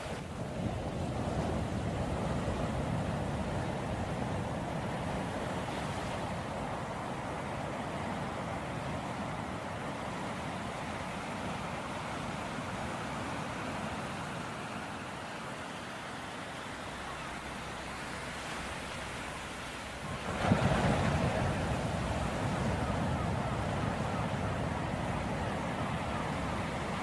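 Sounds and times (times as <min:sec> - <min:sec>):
ocean surf washing: 0:00.0 - 0:27.0
wave breaking: 0:17.4 - 0:27.0.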